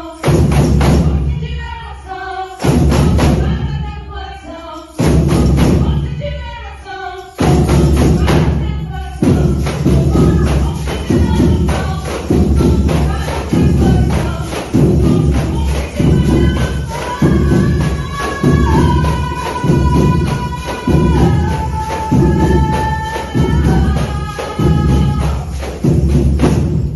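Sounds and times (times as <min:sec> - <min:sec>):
gospel song: 0:00.0 - 0:26.9
jingling tambourine rattle: 0:00.0 - 0:26.9
heavy low drum beat: 0:07.4 - 0:26.9.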